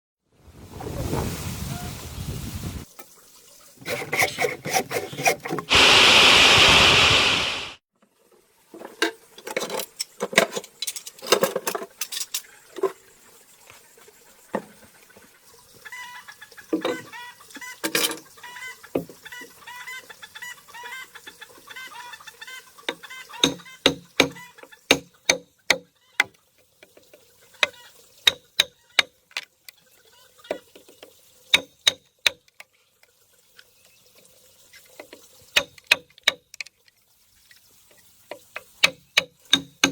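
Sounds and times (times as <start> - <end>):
loud rasping rubbing noise: 3.8 - 7.8
chickens clucking: 15.8 - 23.7.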